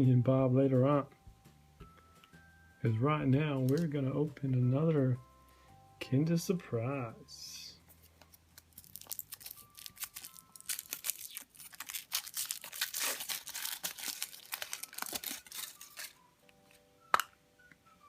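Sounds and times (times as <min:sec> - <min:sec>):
foil wrapper crinkling and tearing: 0:08.0 - 0:16.2.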